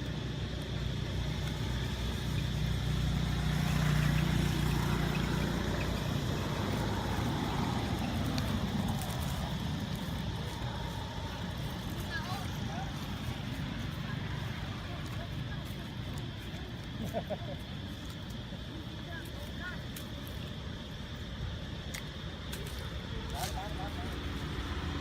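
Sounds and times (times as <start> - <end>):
motor engine humming: 0.0 - 19.4
steady outdoor noise: 0.0 - 25.0.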